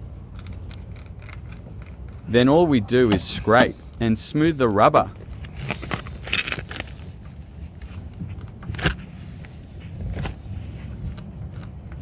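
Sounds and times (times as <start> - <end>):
low background noise: 0.0 - 5.7.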